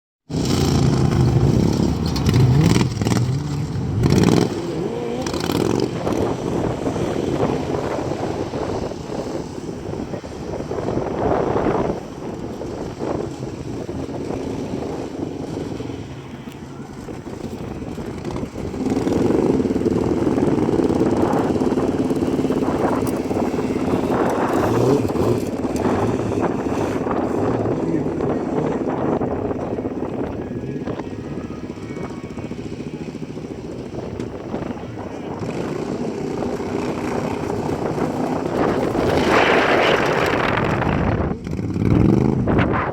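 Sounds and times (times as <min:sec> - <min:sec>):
loud rushing noise: 0:00.3 - 0:16.3, 0:32.6 - 0:42.9
wind buffeting microphone: 0:00.3 - 0:42.9
lawnmower engine running: 0:11.7 - 0:42.4.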